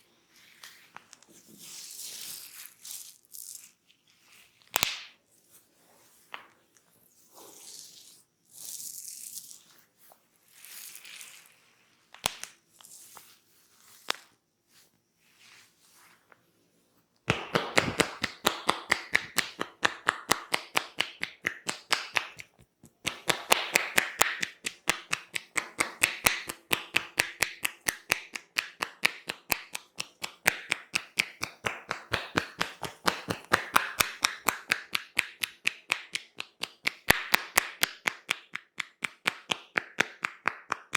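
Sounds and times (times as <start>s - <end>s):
rapid hand taps: 17.3s - 40.9s.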